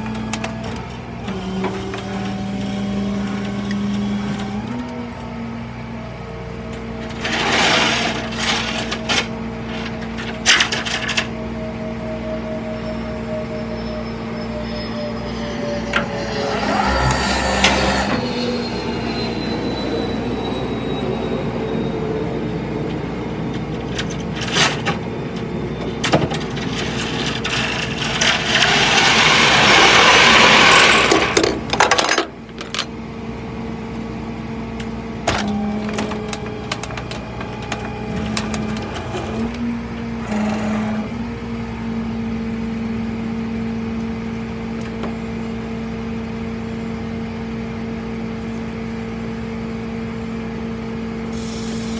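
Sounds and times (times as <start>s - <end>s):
vehicle engine humming: 0.0s - 20.8s, 32.4s - 51.9s
loud rushing hiss: 51.3s - 51.9s.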